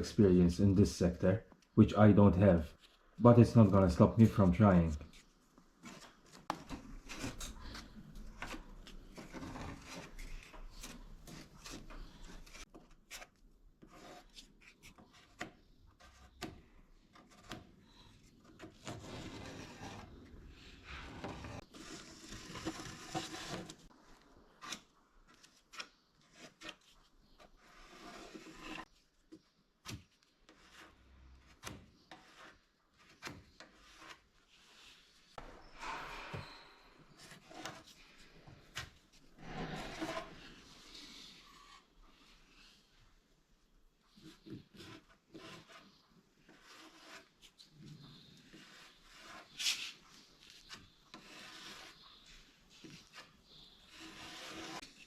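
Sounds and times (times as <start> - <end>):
spreader scraping filler on metal: 35.4 - 41.9, 48.0 - 55.0.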